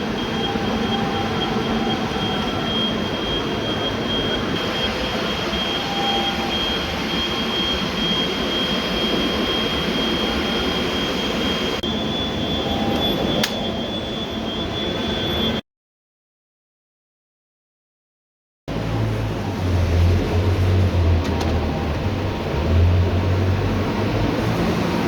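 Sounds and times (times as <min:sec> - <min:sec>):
machine high-pitched whine: 0:00.0 - 0:15.6, 0:18.7 - 0:25.0
sharp click: 0:13.4 - 0:13.6.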